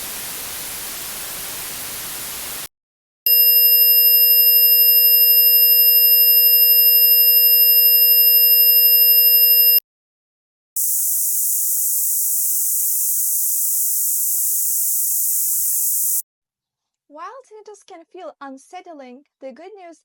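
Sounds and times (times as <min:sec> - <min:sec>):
steady hiss: 0:00.0 - 0:02.7, 0:10.8 - 0:16.2
high-pitched ringing tones: 0:03.3 - 0:09.8, 0:10.8 - 0:16.2.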